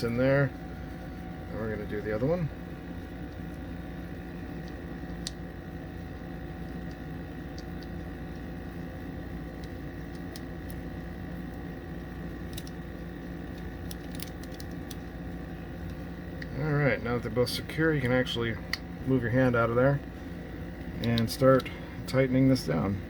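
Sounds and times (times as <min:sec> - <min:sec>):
room hum: 0:00.0 - 0:23.0
light clicks of small parts: 0:21.0 - 0:21.7.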